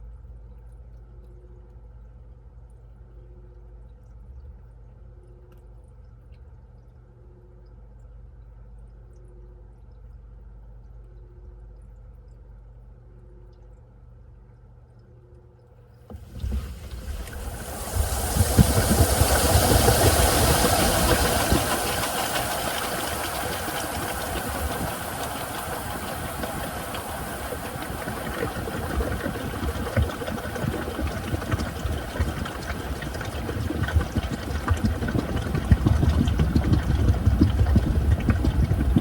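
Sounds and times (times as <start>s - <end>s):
washing machine running: 16.1s - 39.0s.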